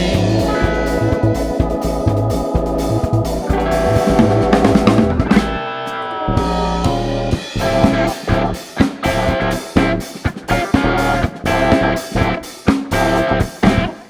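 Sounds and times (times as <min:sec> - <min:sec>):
held chords sliding downward: 0:00.0 - 0:08.6
guitar: 0:00.0 - 0:14.0
jazz-funk band playing: 0:00.0 - 0:14.0.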